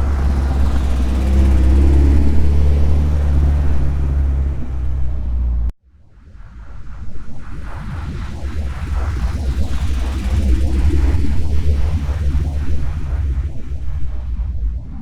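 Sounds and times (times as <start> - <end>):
phased engine rumble: 0.0 - 5.7, 8.8 - 15.0.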